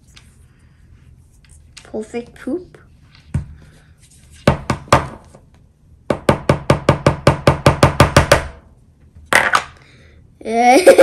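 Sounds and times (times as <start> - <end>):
sharp knocks on hard surface: 4.5 - 5.3, 6.1 - 8.6.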